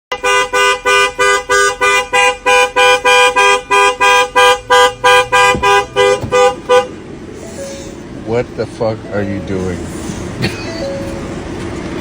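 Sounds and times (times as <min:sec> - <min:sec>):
horn honking rapidly: 0:00.1 - 0:07.0.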